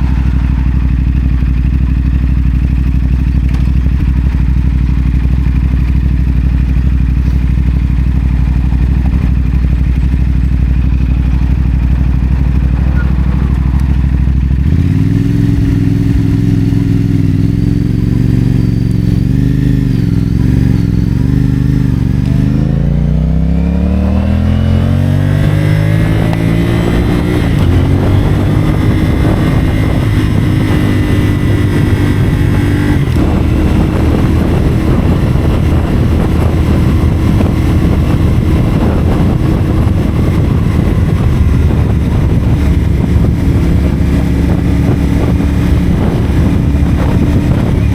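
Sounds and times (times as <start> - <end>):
motorcycle engine accelerating: 0.0 - 47.9.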